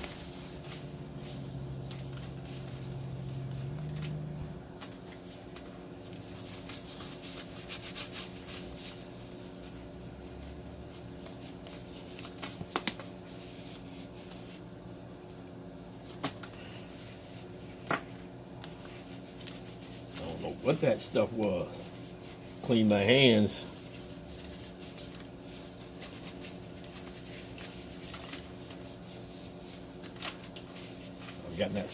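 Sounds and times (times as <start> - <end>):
low electrical hum: 0.0 - 31.9
hands rubbing a cable: 5.1 - 9.8, 18.6 - 23.1.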